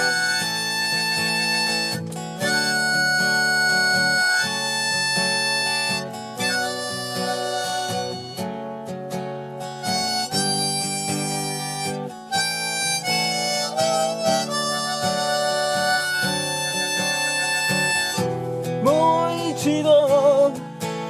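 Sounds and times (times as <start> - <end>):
harmonica melody: 0.0 - 20.6
strummed acoustic guitar: 0.0 - 21.0.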